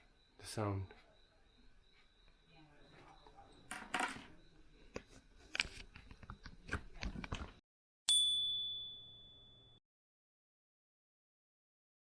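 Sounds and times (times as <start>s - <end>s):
clear ding: 8.1s - 9.8s.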